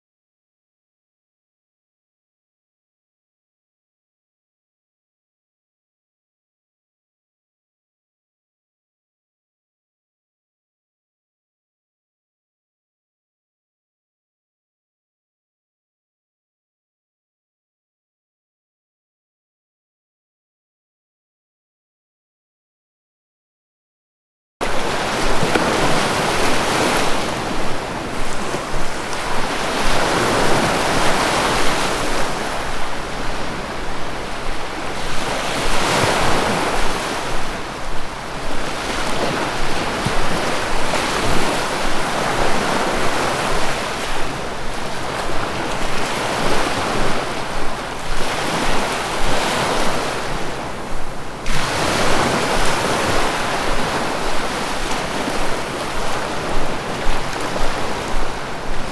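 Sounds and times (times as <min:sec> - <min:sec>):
sea waves breaking: 0:24.6 - 0:58.9.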